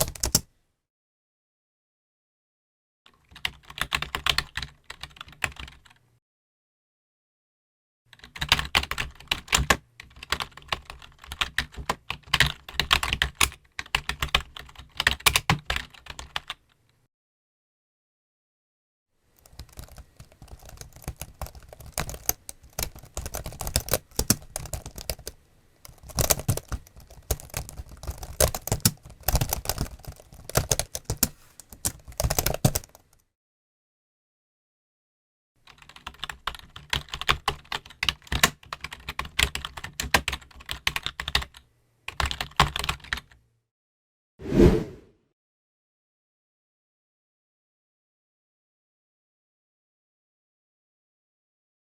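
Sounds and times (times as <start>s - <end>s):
typing on computer keyboard: 0.0s - 0.4s, 3.1s - 6.0s, 8.1s - 16.6s, 19.4s - 33.2s, 35.7s - 43.4s.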